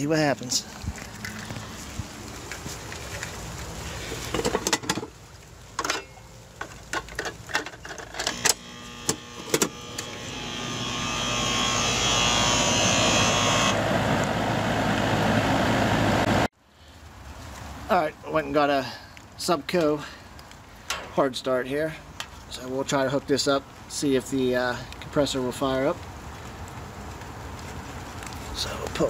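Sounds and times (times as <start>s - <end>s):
condenser fan rushing air: 8.3s - 16.5s.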